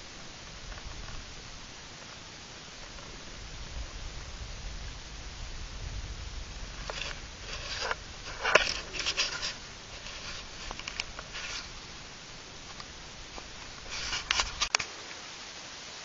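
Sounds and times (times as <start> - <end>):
steady hiss: 0.0 - 16.0
rustles and sharp clicks: 6.2 - 15.0.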